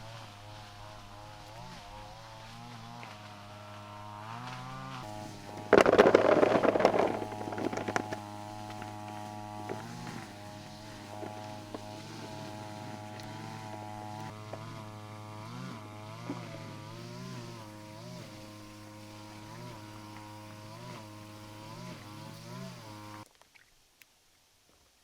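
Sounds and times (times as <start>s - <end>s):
small engine running: 0.0s - 23.2s
loud clattering rushing noise: 5.6s - 8.2s.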